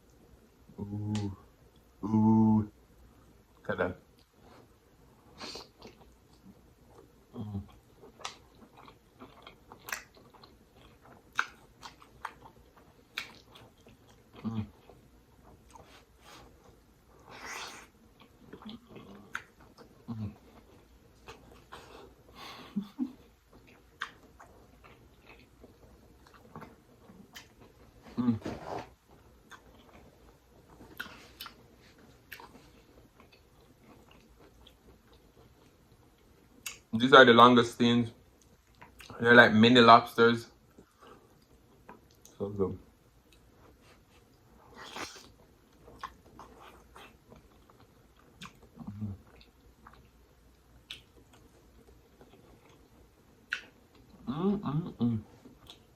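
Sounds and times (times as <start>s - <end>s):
close-miked chewing: 3.2s - 28.2s, 29.0s - 37.0s, 38.2s - 39.3s, 40.6s - 55.9s
wet mouth clicks and smacks: 9.8s - 10.3s, 11.3s - 12.4s, 50.8s - 51.5s.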